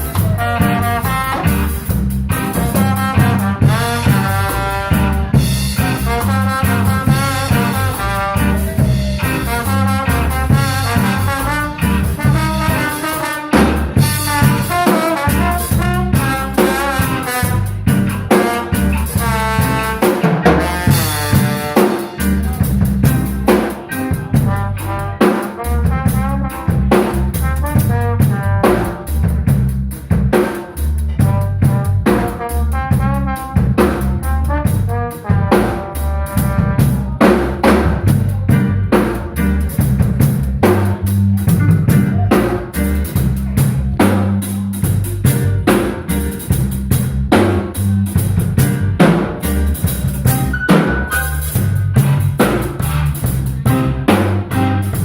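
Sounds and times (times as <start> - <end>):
drum kit beat: 0.0 - 55.0
live instrumental band: 0.0 - 55.0.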